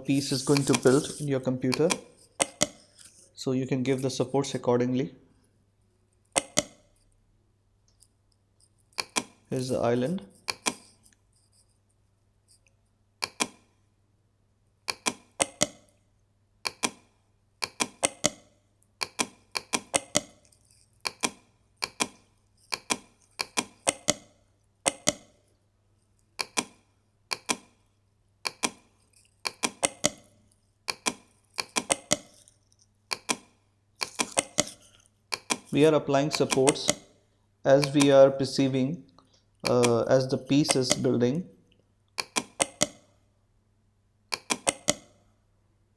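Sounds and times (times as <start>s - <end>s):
computer mouse clicking: 0.0s - 3.3s, 6.3s - 7.0s, 7.9s - 11.2s, 13.2s - 13.8s, 14.9s - 16.0s, 16.6s - 25.4s, 26.4s - 27.8s, 28.4s - 37.2s, 37.8s - 38.2s, 39.6s - 41.1s, 42.1s - 43.2s, 44.3s - 45.2s
faint electrical hum: 0.0s - 45.9s.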